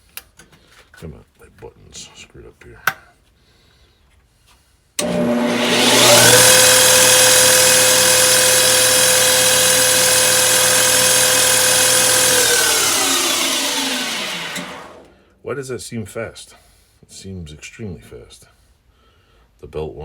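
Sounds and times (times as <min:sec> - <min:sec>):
metal lathe motor whine: 0:05.0 - 0:15.1.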